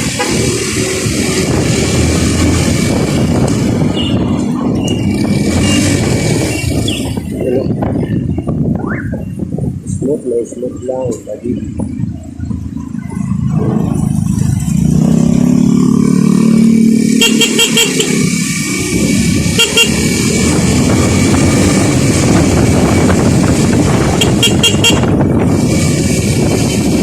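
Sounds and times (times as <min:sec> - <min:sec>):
rushing noise of moving ride: 0:00.0 - 0:27.0
vehicle horn: 0:03.9 - 0:04.3, 0:17.1 - 0:18.3, 0:19.4 - 0:20.2, 0:24.1 - 0:25.2.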